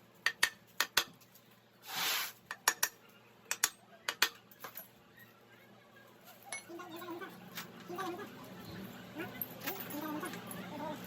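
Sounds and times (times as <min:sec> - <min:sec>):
short hiss: 0:01.8 - 0:02.4
metal tools clinking: 0:09.3 - 0:10.8.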